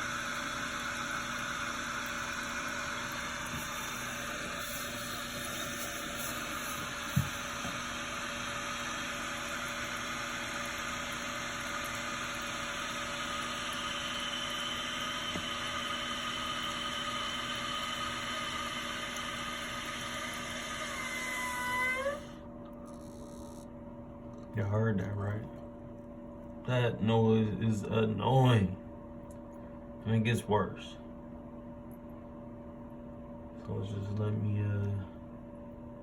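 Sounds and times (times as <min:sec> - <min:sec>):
water hissing through valve: 0:03.4 - 0:07.8.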